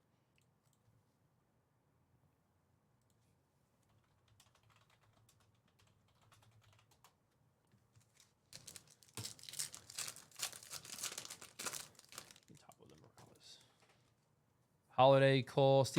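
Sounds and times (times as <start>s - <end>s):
faint keyboard tapping: 3.8s - 9.4s
foil wrapper crinkling and tearing: 8.1s - 12.8s.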